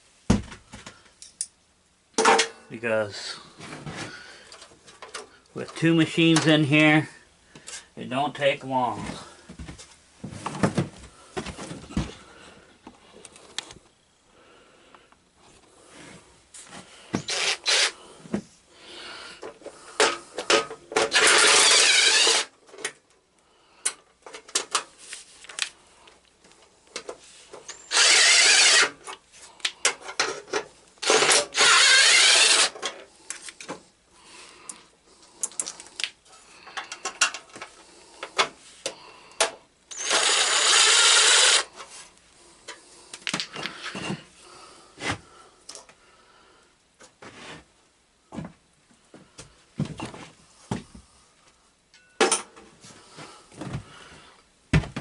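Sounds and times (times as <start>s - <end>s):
power drill running: 17.2s - 18.0s, 21.0s - 22.5s, 27.7s - 29.0s, 31.0s - 32.8s, 39.9s - 41.7s.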